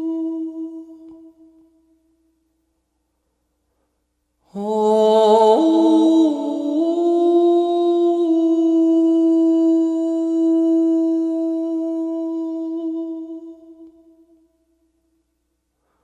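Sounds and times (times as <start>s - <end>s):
person singing: 0.0s - 1.8s, 4.5s - 14.5s.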